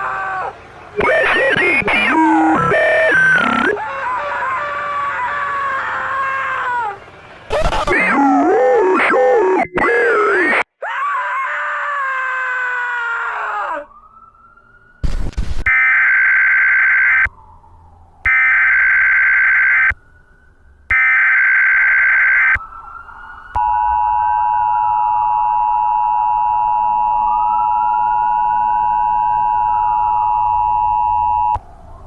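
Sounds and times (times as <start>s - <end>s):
distorted falling wail: 0.0s - 10.6s, 22.3s - 31.6s
two-tone attention signal: 2.1s - 3.7s, 23.6s - 31.6s
burst of static: 15.0s - 15.7s
faint siren-like gliding tone: 21.4s - 32.0s.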